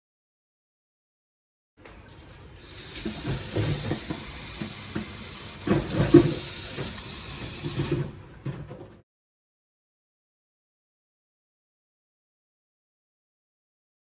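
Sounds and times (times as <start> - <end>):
tap water splashing into sink: 2.6 - 8.2.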